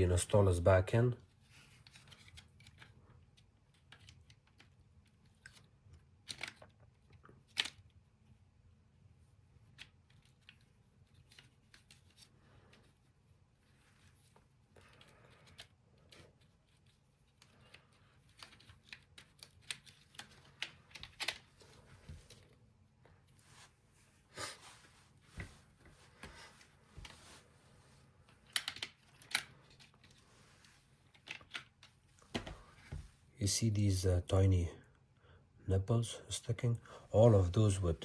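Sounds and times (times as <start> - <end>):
clicks of plastic parts handled: 1.7 - 7.9, 28.3 - 30.2, 31.1 - 33.0.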